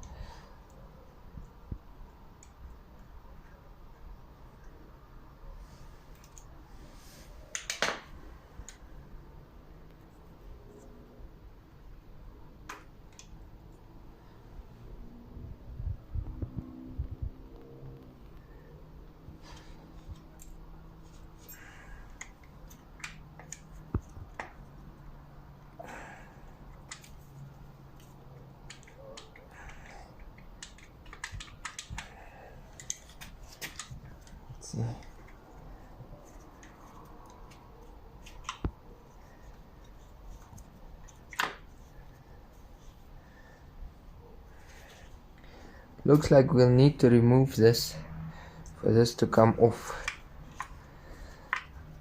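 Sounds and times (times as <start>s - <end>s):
hand tools clicking on metal: 28.6s - 34.4s.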